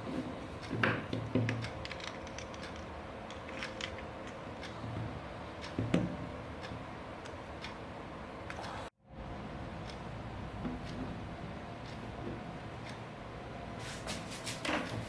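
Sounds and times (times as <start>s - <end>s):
small hard objects clicking: 1.5s - 4.4s.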